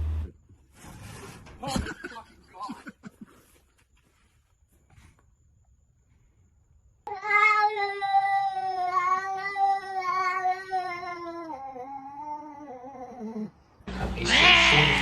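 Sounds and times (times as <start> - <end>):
cat yowling: 7.1 - 13.5, 14.2 - 15.0.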